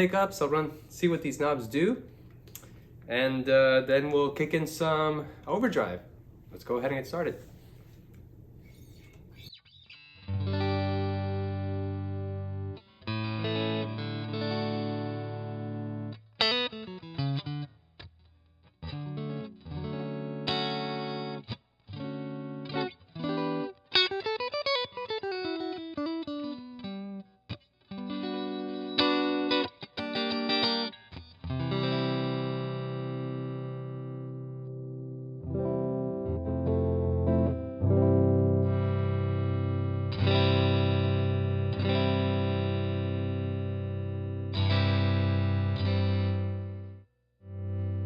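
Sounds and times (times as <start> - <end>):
electric guitar single notes: 8.9 - 17.7, 18.8 - 48.0
electric guitar strummed chords: 9.9 - 17.7, 18.8 - 48.0.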